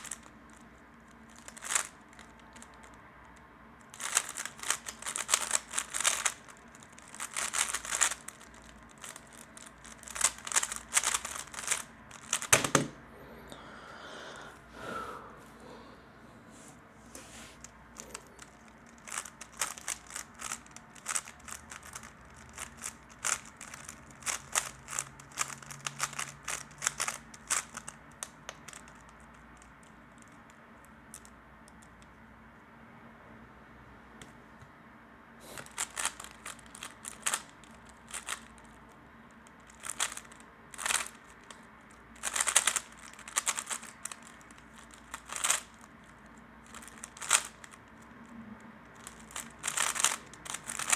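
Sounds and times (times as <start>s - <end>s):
puzzle cube clicking: 1.3s - 2.7s, 3.9s - 13.0s, 18.0s - 28.8s, 35.6s - 38.8s, 39.7s - 41.6s, 42.2s - 45.9s, 46.6s - 48.1s, 49.0s - 50.9s.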